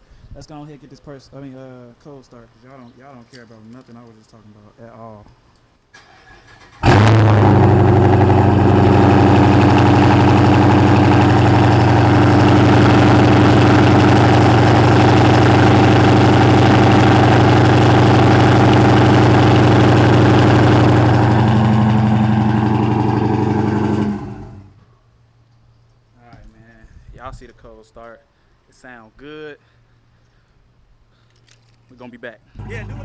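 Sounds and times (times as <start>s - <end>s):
car engine idling: 6.8s - 24.8s, 32.6s - 33.0s.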